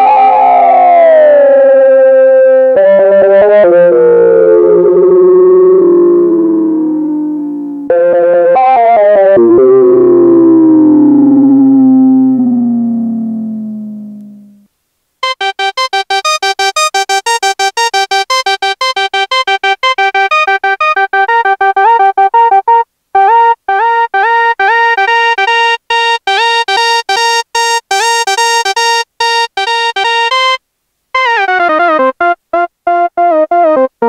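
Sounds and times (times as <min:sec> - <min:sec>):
synthesizer notes sliding downward: 0:03.8 - 0:30.6
fast sequenced synthesizer notes: 0:15.2 - 0:30.6.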